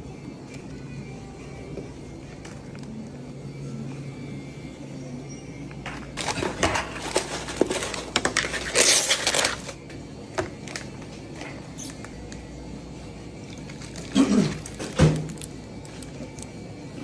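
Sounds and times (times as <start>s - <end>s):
food packaging crackling: 6.2s - 9.9s.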